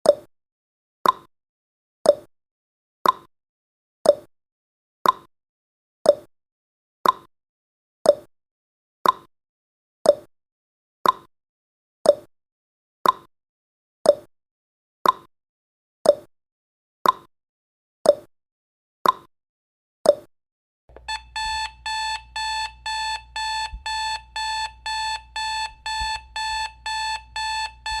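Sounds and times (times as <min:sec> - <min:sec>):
electronic alarm beeping: 0:20.9 - 0:28.0
timer ticking: 0:20.9 - 0:28.0.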